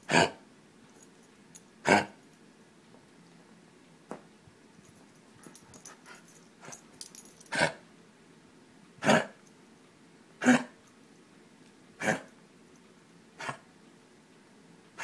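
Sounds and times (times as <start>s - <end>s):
dog coughing: 0.1s - 0.4s, 1.8s - 2.2s, 7.5s - 7.8s, 9.0s - 9.4s, 10.4s - 10.8s, 12.0s - 12.3s, 13.4s - 13.6s.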